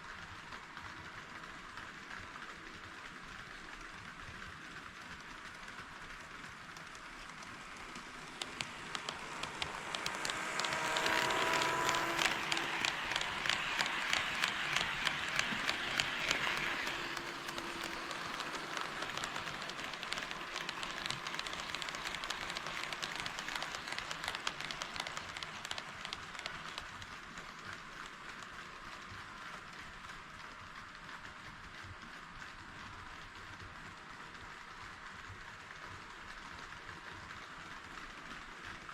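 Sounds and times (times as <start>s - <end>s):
model train running: 0.0s - 38.9s
wheels clicking over rail joints: 5.1s - 28.8s.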